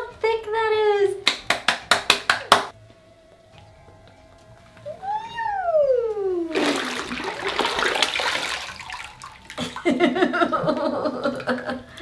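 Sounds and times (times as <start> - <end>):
water sloshing in a bathtub: 6.5 - 12.0.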